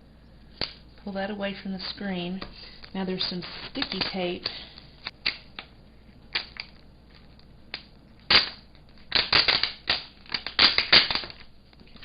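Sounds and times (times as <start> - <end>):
sticky tape being peeled: 6.3 - 12.0.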